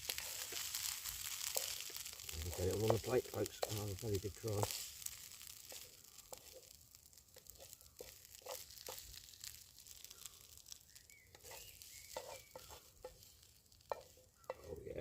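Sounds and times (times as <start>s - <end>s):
spoon scraping pan: 0.0s - 10.7s, 11.3s - 14.8s
faint sizzle from pan: 0.0s - 15.0s.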